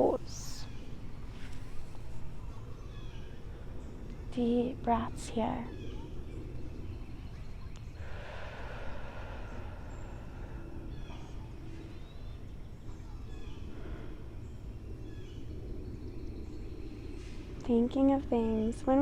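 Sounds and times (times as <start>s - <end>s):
faint birds chirping: 0.0s - 19.0s
steady low hum: 0.0s - 19.0s
soft rush of breath: 7.8s - 17.6s.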